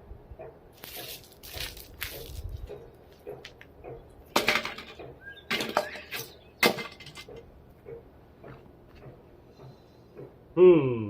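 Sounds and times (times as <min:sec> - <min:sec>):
metal parts clanking and scraping: 0:04.3 - 0:07.4.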